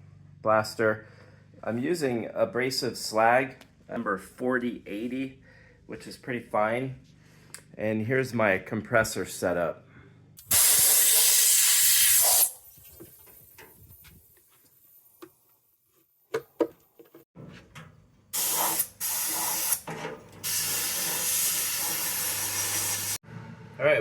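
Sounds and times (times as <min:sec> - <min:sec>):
media blaster hissing spray: 0:10.4 - 0:13.0, 0:18.4 - 0:23.2.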